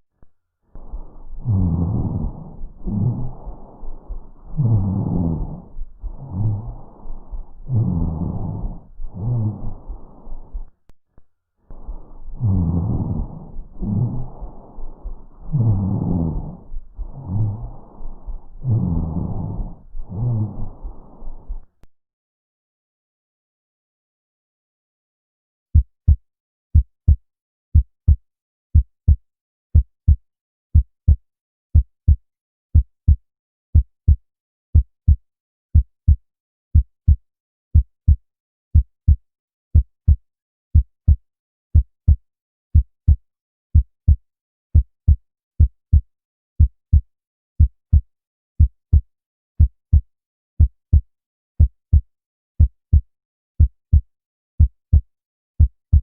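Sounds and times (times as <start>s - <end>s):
heartbeat lub-dub: 0.8s - 10.7s, 11.7s - 21.7s.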